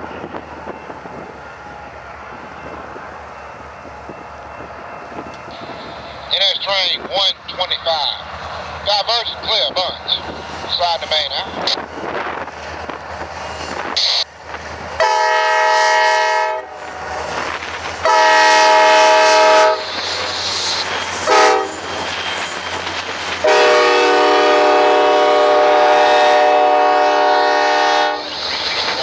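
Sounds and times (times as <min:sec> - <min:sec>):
locomotive air horn blasts: 0:15.0 - 0:16.8, 0:18.0 - 0:19.9, 0:21.3 - 0:21.8, 0:23.4 - 0:28.3.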